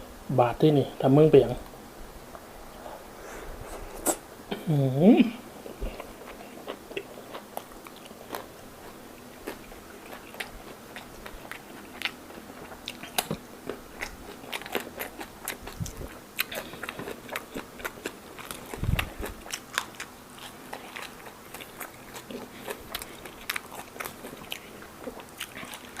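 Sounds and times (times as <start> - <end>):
wet chewing and mouth smacks: 5.6 - 26.0.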